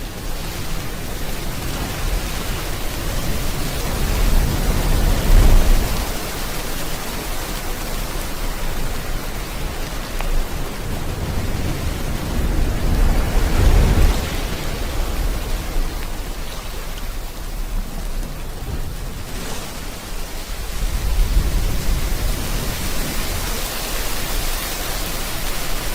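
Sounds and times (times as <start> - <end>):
sea waves rushing: 0.0 - 25.9
steady rain: 0.0 - 25.9.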